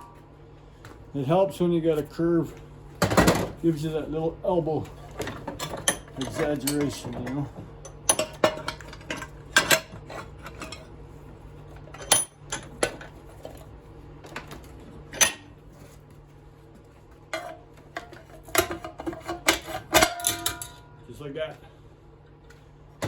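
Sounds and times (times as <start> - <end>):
metal clinks and scrapes: 5.3 - 10.9, 18.3 - 20.9.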